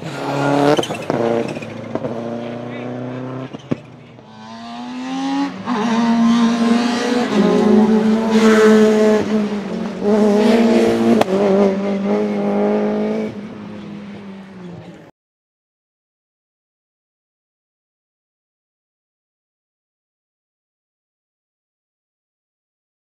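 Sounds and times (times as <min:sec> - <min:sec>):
rally car engine revving hard: 0:00.0 - 0:14.9.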